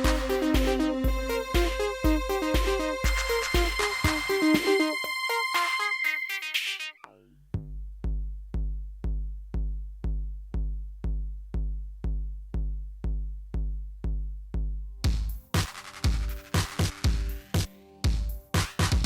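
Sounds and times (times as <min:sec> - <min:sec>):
kick drum beating: 0:00.0 - 0:04.7, 0:07.6 - 0:19.0
electronic dance music: 0:00.0 - 0:07.0, 0:15.1 - 0:19.0.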